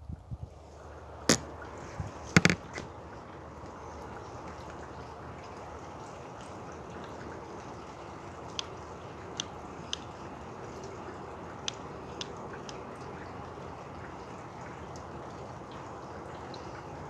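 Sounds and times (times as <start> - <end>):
light rain and wind hiss: 2.9 - 17.0
light ticks: 8.5 - 10.2, 11.6 - 13.0.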